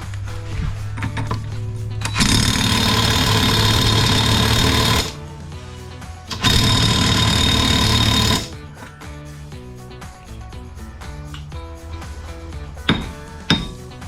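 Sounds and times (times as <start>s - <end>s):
impact wrench hammering: 2.0s - 5.3s, 6.3s - 9.0s, 12.8s - 13.8s.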